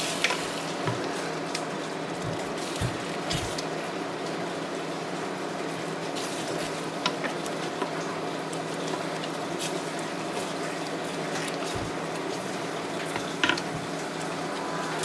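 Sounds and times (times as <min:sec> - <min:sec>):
rain hissing: 0:13.8 - 0:15.0.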